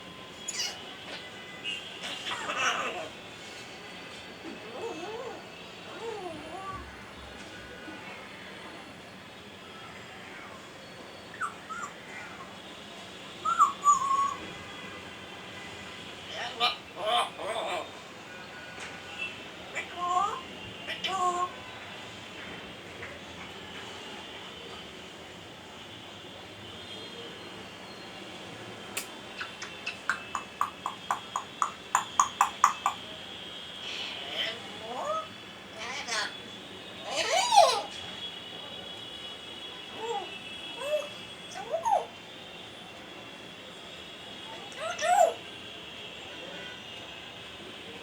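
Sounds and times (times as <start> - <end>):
parrot whistled calls: 0.4 - 0.9, 11.3 - 12.5, 13.4 - 14.6, 29.4 - 33.0, 33.9 - 35.4, 40.0 - 42.1
tongue clicks: 29.0 - 33.0.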